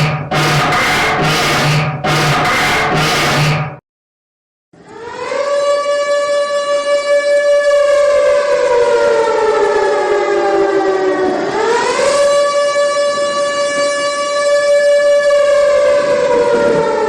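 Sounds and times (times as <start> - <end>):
siren tone sliding in pitch: 4.9 - 17.0.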